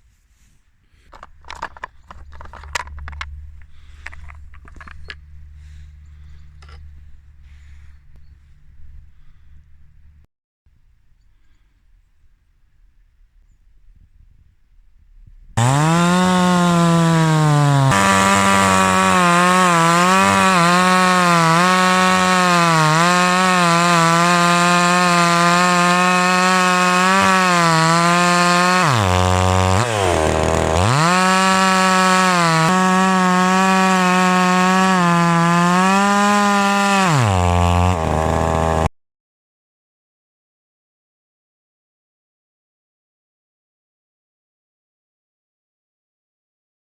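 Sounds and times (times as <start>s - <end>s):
chainsaw cutting through wood: 1.0s - 10.0s, 15.6s - 38.9s.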